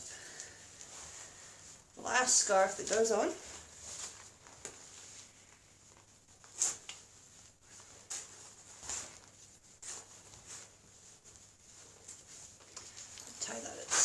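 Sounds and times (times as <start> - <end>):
cloth rustling: 0.0 - 14.0.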